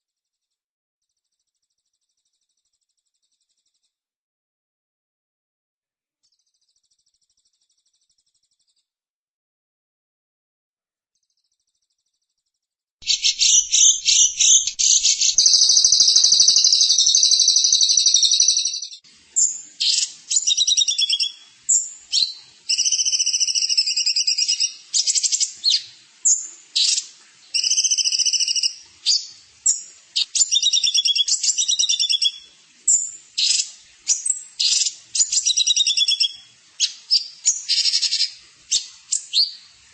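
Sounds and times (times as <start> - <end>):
songbird singing: 13.0 - 39.8.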